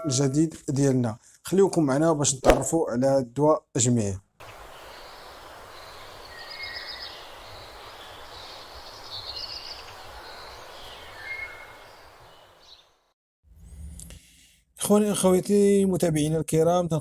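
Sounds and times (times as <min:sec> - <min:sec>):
birds chirping and trilling: 0:04.4 - 0:13.1
steady outdoor hiss: 0:04.4 - 0:13.1.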